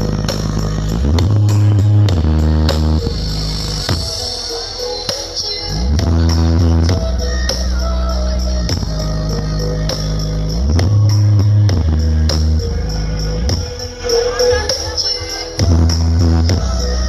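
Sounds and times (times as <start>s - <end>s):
loud music with deep bass: 0.0s - 17.0s
drum beat: 3.9s - 4.5s.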